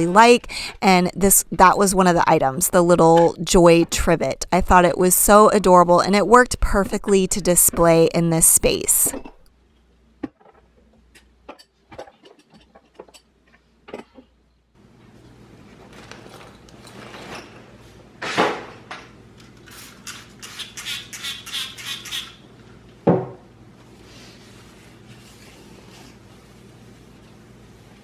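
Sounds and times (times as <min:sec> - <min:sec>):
knock: 0:23.1 - 0:23.4.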